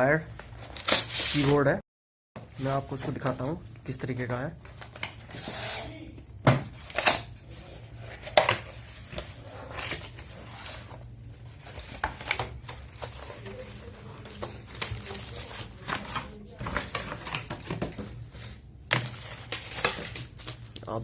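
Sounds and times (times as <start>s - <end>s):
packaging rustling: 6.8s - 21.0s.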